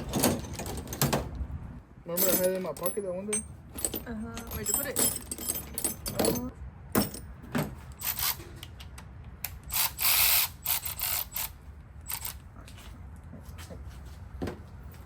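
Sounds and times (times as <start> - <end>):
metal hand tools clattering: 2.1 - 7.2.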